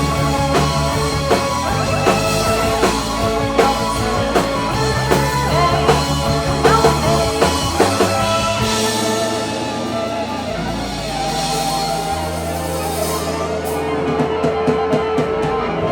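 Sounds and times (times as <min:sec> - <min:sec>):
bass notes: 0:00.0 - 0:15.9
drum kit: 0:00.0 - 0:15.9
electric guitar: 0:00.0 - 0:15.9.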